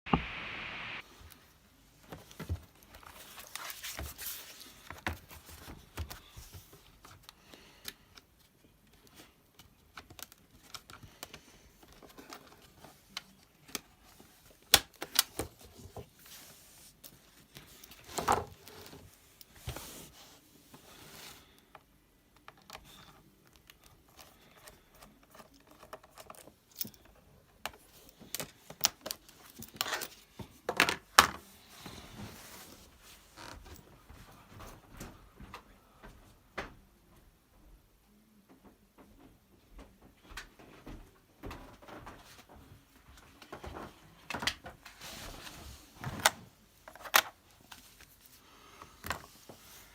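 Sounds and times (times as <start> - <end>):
scrape: 16.2 - 21.6, 31.5 - 33.3, 45.0 - 46.0.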